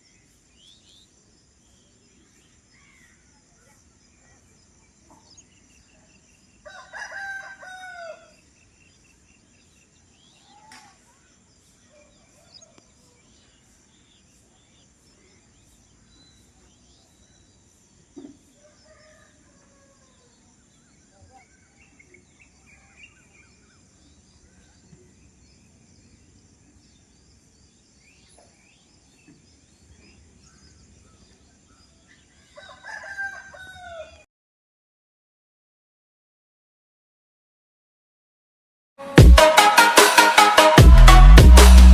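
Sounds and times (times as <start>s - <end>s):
small birds chirping: 0.0s - 7.3s, 8.1s - 32.8s
rooster crowing: 6.6s - 8.4s, 18.6s - 20.3s, 32.6s - 34.2s.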